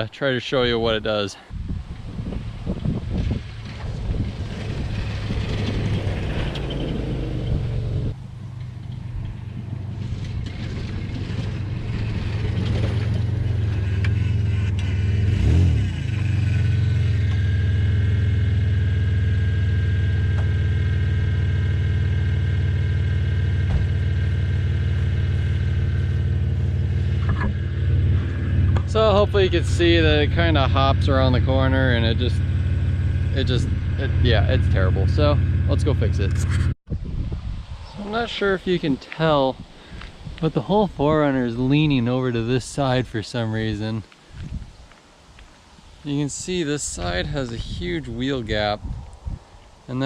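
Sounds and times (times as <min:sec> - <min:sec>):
car engine running: 0:01.9 - 0:36.8.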